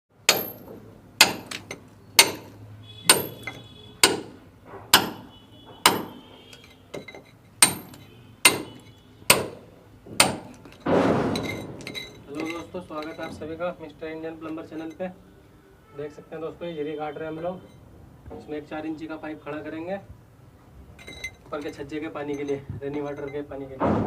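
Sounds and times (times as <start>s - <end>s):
hammer striking masonry wall: 0.2s - 13.4s.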